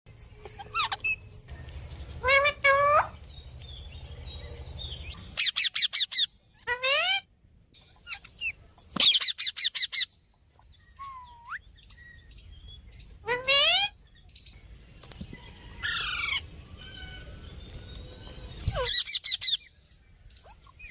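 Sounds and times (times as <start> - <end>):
parrot calling: 0.4 - 1.4, 2.2 - 3.2, 5.2 - 7.3, 13.0 - 14.0.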